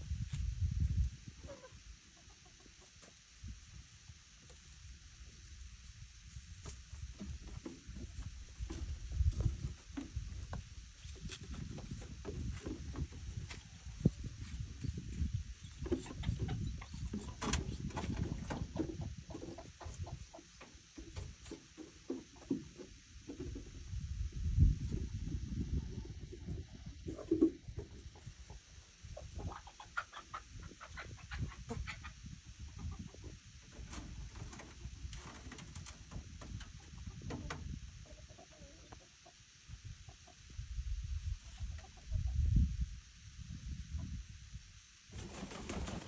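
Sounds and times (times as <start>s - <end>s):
peafowl clucking: 1.4s - 3.1s, 15.6s - 22.6s, 27.1s - 39.4s
birds pecking and stepping: 5.3s - 23.8s, 32.8s - 39.1s, 45.1s - 46.0s.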